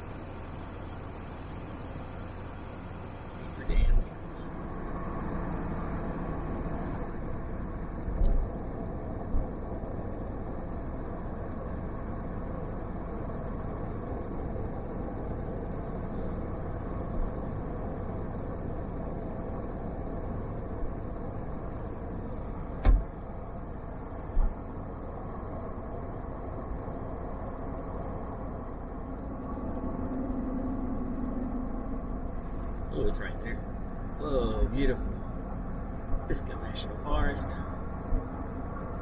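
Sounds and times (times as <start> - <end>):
road and engine noise in cabin: 0.0 - 39.0
short thumps: 22.8 - 23.1.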